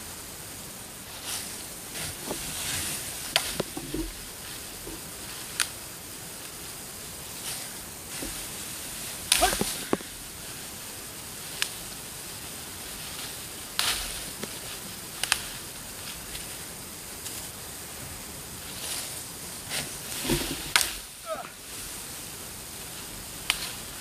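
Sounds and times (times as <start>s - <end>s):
steady background hiss: 0.0s - 24.0s.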